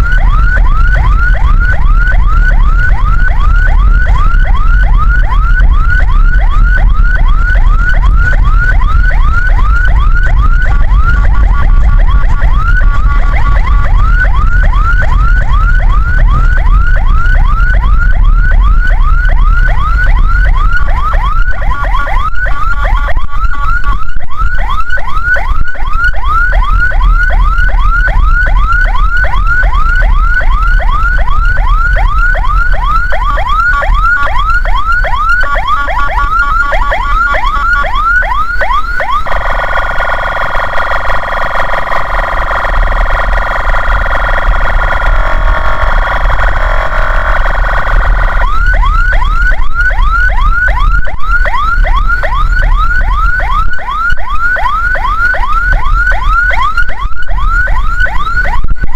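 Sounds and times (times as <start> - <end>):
low rumble: 0.0 - 23.4, 39.0 - 54.0
ambulance siren sweeping: 0.0 - 58.9.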